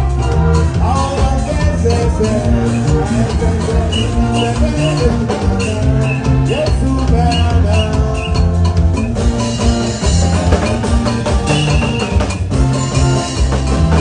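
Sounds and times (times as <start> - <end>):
upbeat dance music: 0.0 - 9.1.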